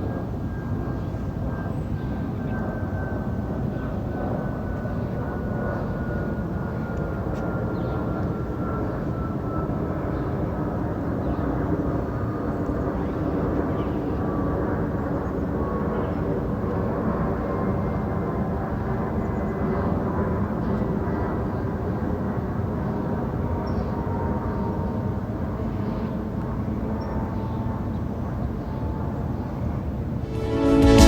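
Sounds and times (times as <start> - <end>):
jet airliner flying overhead: 0.0 - 31.0.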